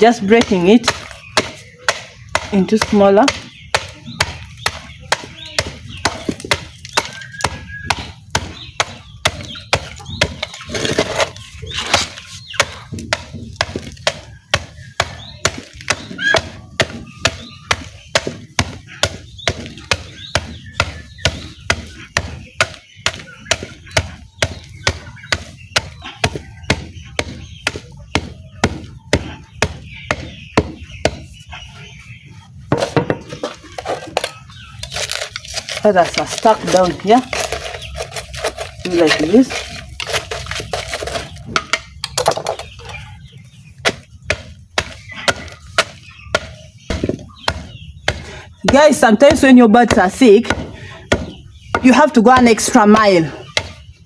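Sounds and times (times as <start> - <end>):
charcoal being broken with blows: 34.8 - 41.2.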